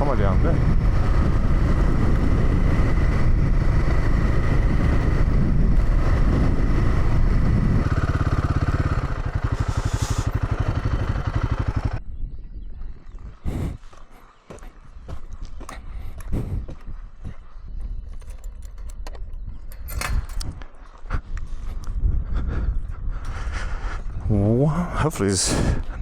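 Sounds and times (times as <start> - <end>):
road noise on gravel: 0.0 - 12.0
motorcycle engine running: 0.0 - 12.2.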